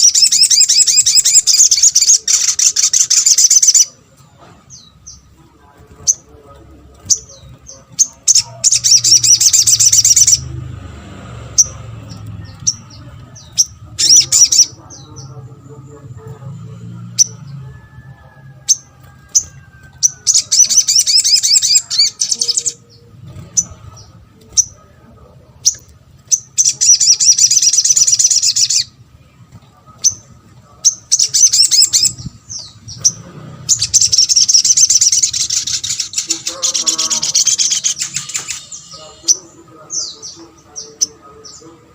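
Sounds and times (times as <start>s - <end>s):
sharp bird chirps: 0.0s - 3.9s, 7.1s - 10.5s
bird singing chirping trills: 0.0s - 41.9s.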